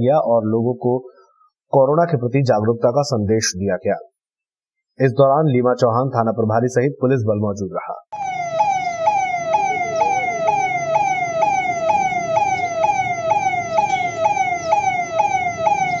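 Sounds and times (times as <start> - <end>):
low background noise: 0.0 - 16.0
police siren: 8.1 - 16.0.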